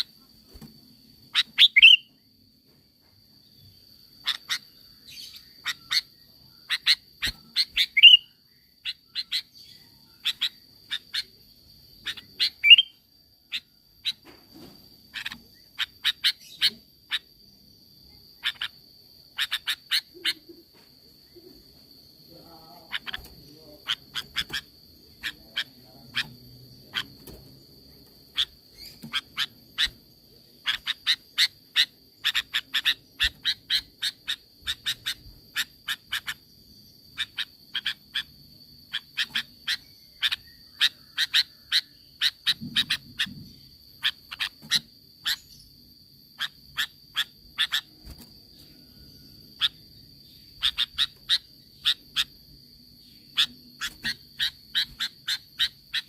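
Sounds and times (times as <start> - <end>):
bulbul calling: 1.3 - 2.1, 4.2 - 11.4, 12.0 - 14.3, 22.4 - 36.4, 38.9 - 45.6, 49.6 - 52.4, 53.0 - 56.0.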